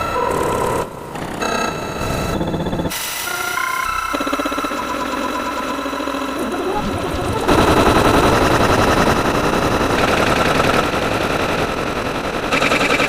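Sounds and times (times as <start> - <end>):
rapid machine-gun-like bangs: 7.0 - 13.0.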